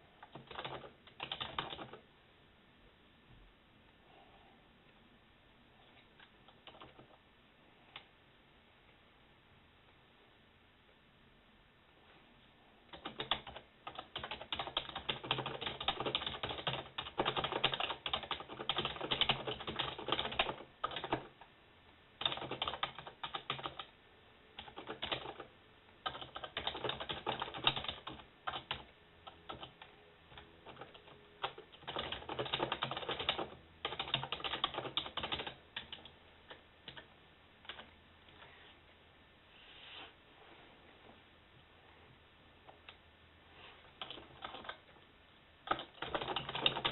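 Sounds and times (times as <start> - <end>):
typing on computer keyboard: 0.2 - 2.0, 6.5 - 7.2, 12.9 - 21.4, 22.2 - 23.9, 24.6 - 37.9, 44.0 - 44.9, 45.6 - 46.9.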